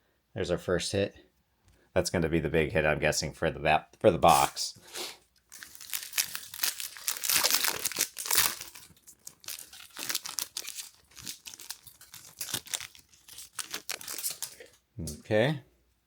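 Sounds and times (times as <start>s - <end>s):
plastic packaging crinkling and tearing: 5.4s - 14.8s.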